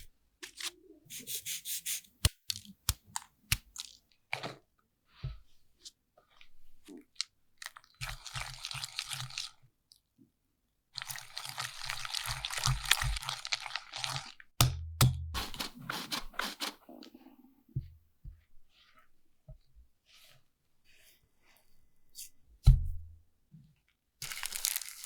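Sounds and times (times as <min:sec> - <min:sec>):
crunching and crackling: 0:11.0 - 0:14.5, 0:24.2 - 0:25.0.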